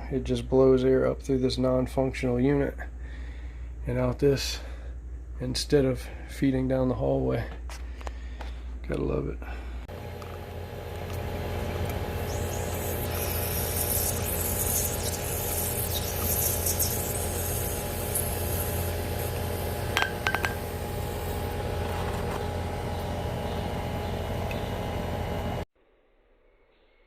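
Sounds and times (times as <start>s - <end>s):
air blowing through vent: 7.9s - 25.6s.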